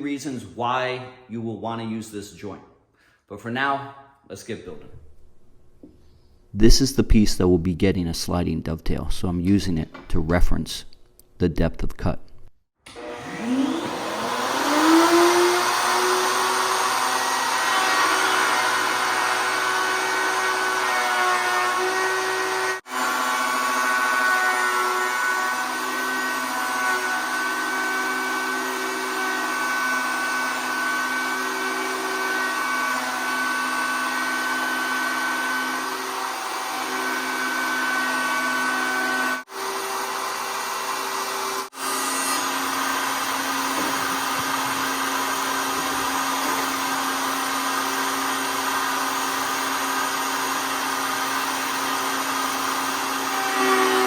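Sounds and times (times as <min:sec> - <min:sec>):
router motor whining: 0:12.9 - 0:54.0.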